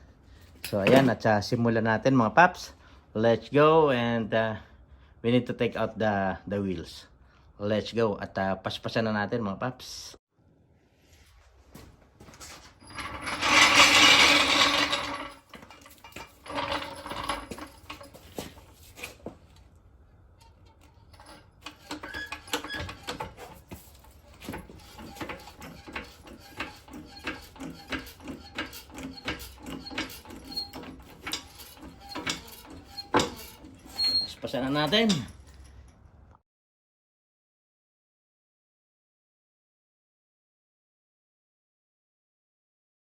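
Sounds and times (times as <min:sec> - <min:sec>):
impact wrench rattling burst: 0:13.0 - 0:18.1.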